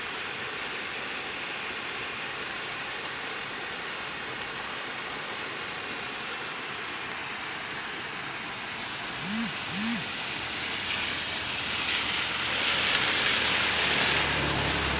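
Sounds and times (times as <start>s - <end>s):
water rushing into river: 0.1s - 14.9s.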